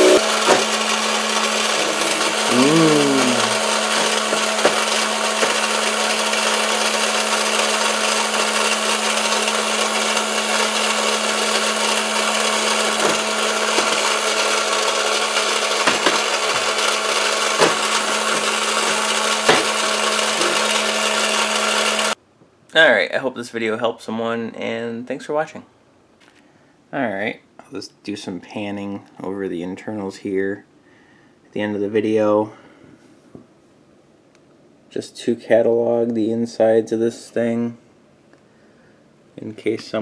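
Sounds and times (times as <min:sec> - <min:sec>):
toy motor and gears humming: 0:00.0 - 0:22.2.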